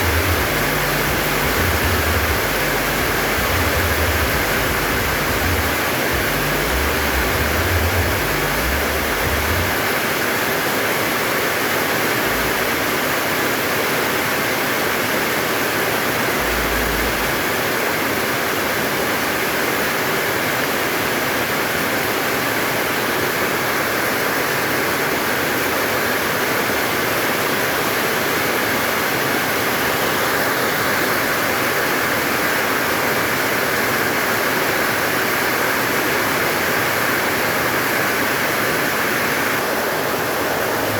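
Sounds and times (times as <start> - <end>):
brief low rumbles: 0.0 - 9.8, 16.4 - 17.6
heavy rain pouring: 0.0 - 40.9.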